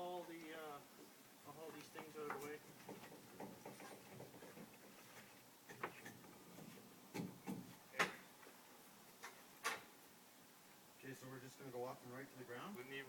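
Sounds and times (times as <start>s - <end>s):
objects knocking and clunking: 2.2s - 8.2s.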